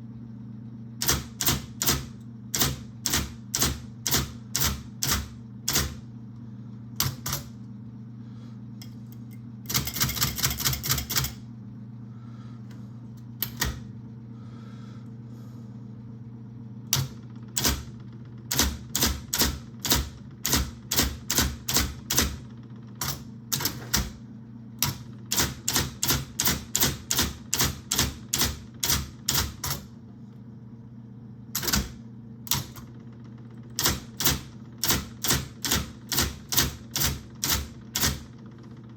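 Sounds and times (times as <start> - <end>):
typewriter motor hum: 0.9 - 11.5, 13.2 - 14.7, 16.8 - 30.1, 31.5 - 38.9
electric typewriter typing: 1.0 - 6.1, 7.0 - 7.6, 9.6 - 11.4, 13.4 - 13.9, 16.9 - 24.2, 24.8 - 29.9, 31.6 - 33.0, 33.7 - 38.9.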